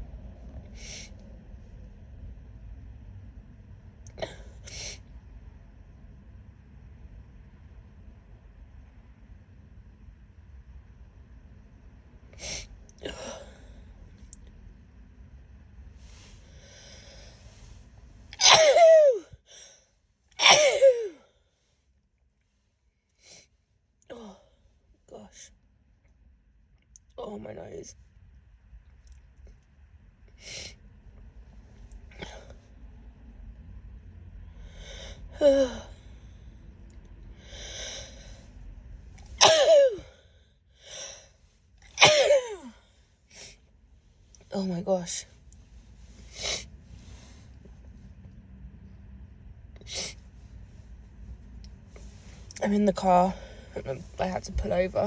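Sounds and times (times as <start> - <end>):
woman sneezing: 18.4 - 19.4, 20.4 - 21.2, 39.4 - 40.2, 41.9 - 42.8.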